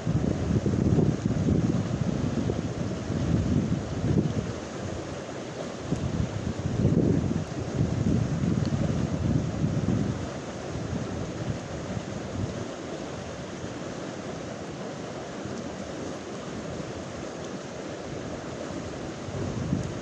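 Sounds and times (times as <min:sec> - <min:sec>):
wind buffeting microphone: 0:00.0 - 0:05.1, 0:05.8 - 0:12.6, 0:18.7 - 0:20.0
rush of open water: 0:00.0 - 0:20.0.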